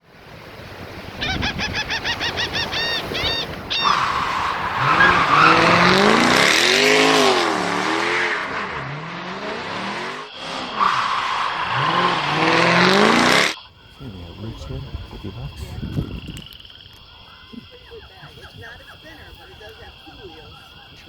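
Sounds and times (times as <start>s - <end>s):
vehicle engine revving: 3.8s - 16.3s.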